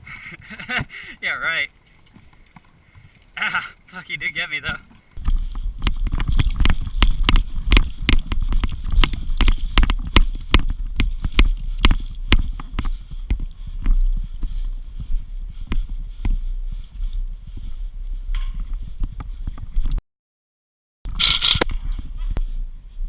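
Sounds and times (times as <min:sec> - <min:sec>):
footsteps on dirt: 0:00.6 - 0:20.0
wind on microphone: 0:05.2 - 0:20.0, 0:21.1 - 0:23.0.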